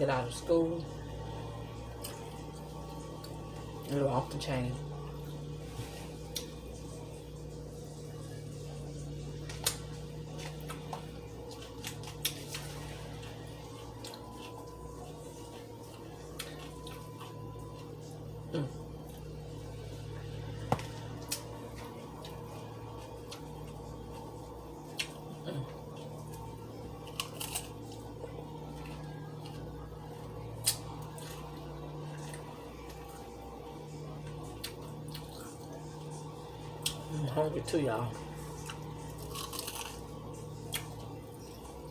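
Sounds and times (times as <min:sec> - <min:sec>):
steady low hum: 0:00.0 - 0:41.9
chewing: 0:09.4 - 0:17.9, 0:21.1 - 0:33.3, 0:34.0 - 0:37.1, 0:38.3 - 0:41.9.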